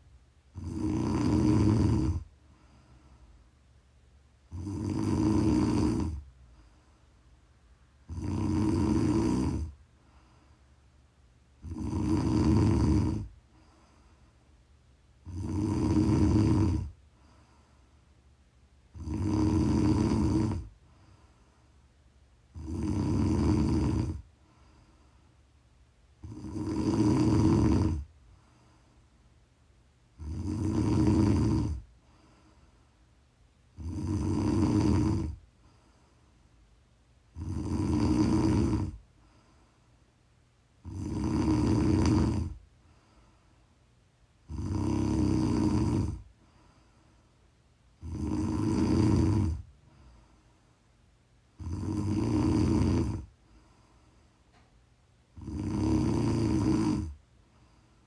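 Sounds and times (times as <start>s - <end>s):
quiet breathing: 0.0s - 58.0s
woman snoring: 0.5s - 2.3s, 4.5s - 6.3s, 8.0s - 9.8s, 11.6s - 13.4s, 15.2s - 17.0s, 18.9s - 20.8s, 22.5s - 24.3s, 26.2s - 28.1s, 30.2s - 31.9s, 33.7s - 35.4s, 37.3s - 39.0s, 40.8s - 42.6s, 44.4s - 46.3s, 48.0s - 49.7s, 51.6s - 53.4s, 55.3s - 57.2s.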